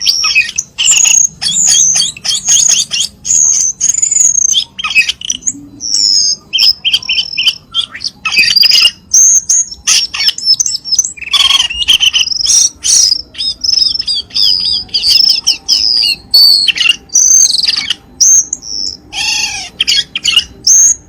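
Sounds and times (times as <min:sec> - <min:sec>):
bird singing: 0:00.0 - 0:21.0.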